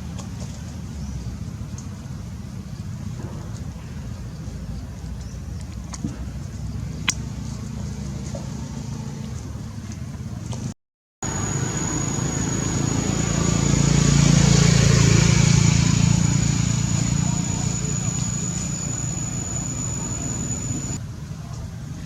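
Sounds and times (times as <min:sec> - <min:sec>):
low outdoor rumble: 0:02.6 - 0:21.0
thin high whine: 0:11.2 - 0:21.0.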